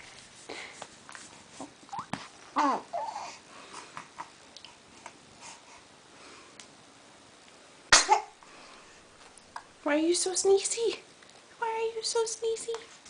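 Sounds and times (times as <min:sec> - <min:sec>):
faint small noises: 0:00.0 - 0:13.0
infant squeaky vocal sounds: 0:01.9 - 0:03.4.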